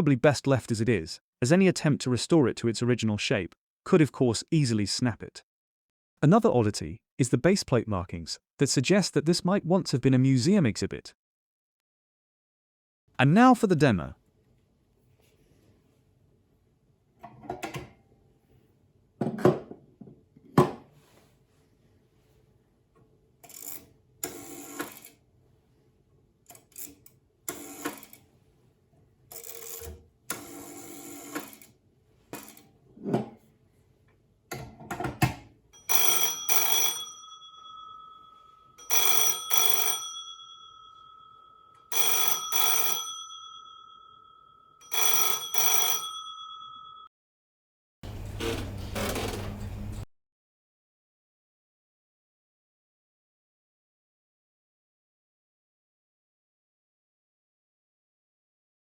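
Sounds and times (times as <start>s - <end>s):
mechanical telephone bell ringing: 23.5s - 25.1s, 29.3s - 29.8s, 30.4s - 31.6s, 35.8s - 47.1s.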